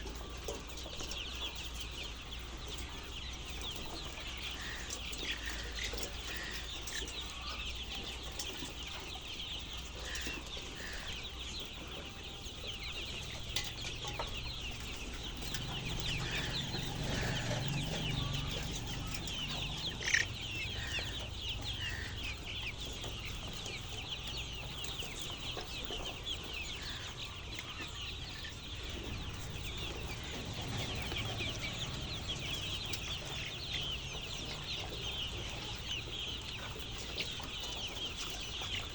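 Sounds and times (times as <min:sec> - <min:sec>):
chickens chirping: 0:00.0 - 0:38.9.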